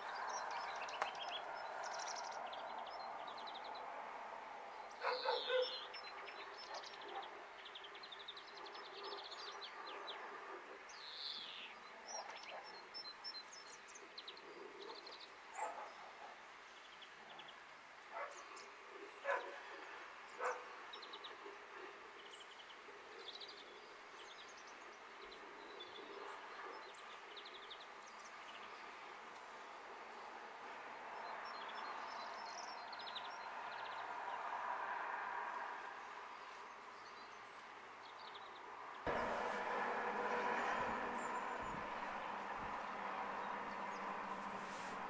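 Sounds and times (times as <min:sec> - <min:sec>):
small birds chirping: 0:00.0 - 0:03.9, 0:04.8 - 0:10.3
sharp bird calls: 0:04.9 - 0:07.3
distant rushing noise: 0:39.1 - 0:45.0.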